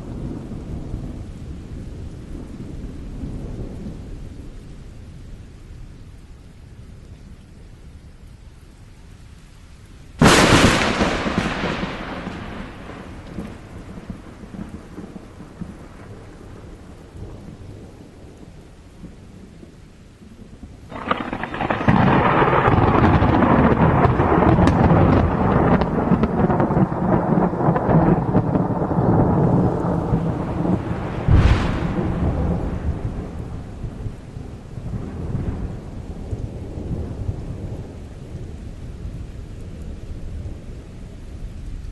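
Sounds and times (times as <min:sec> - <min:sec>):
rolling rumble of thunder: 0:00.0 - 0:07.0, 0:10.2 - 0:41.9
steady rain: 0:00.0 - 0:41.9
sharp thunderclap: 0:10.2 - 0:16.2, 0:20.9 - 0:37.9.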